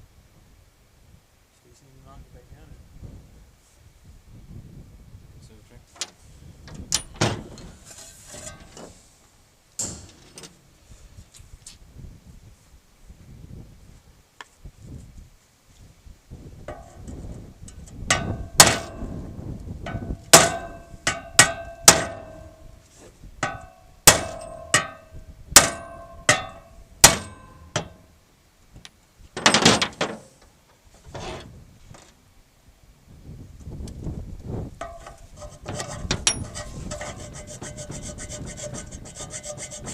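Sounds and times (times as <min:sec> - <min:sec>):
hammer striking metal: 0:19.9 - 0:22.6, 0:23.5 - 0:28.0.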